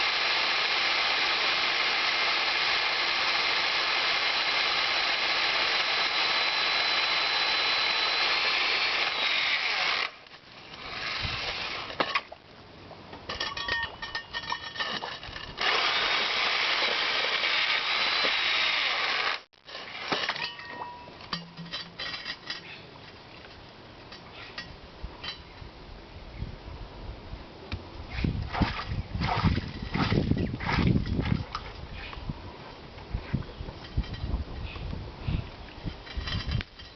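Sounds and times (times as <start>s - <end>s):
power drill drilling into stone: 0.0s - 10.2s, 15.6s - 20.2s.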